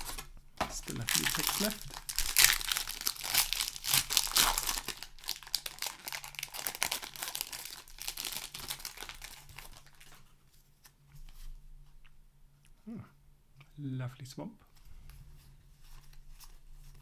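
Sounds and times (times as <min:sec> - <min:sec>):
foil wrapper tearing and crinkling: 0:00.0 - 0:10.2.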